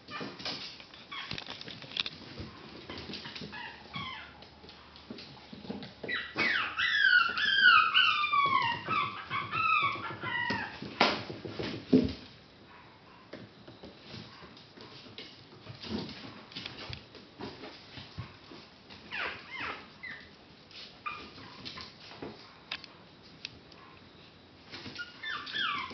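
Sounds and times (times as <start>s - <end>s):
puppies whining and yelping: 2.9s - 4.4s, 6.0s - 11.0s, 19.0s - 20.3s, 21.0s - 22.0s, 24.8s - 25.9s.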